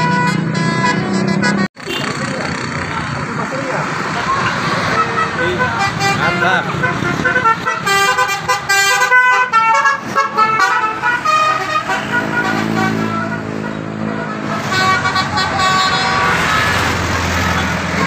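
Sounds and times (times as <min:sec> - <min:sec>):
bus multi-tone air horn: 0:00.0 - 0:02.1, 0:04.3 - 0:18.0.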